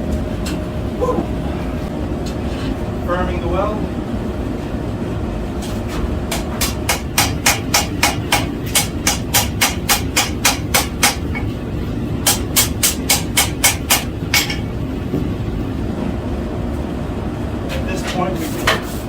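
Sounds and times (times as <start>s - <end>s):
hammer striking on anvil: 6.3s - 11.5s, 12.2s - 14.7s.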